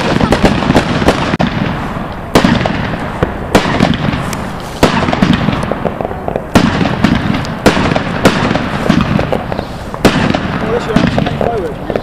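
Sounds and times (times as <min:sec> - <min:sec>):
firework crackle and pops: 0:00.0 - 0:12.0
loud firework bangs: 0:00.0 - 0:12.0.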